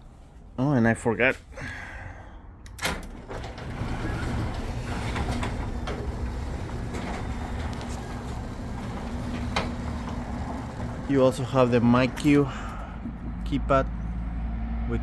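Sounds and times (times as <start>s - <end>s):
garage door opener humming: 2.7s - 14.2s.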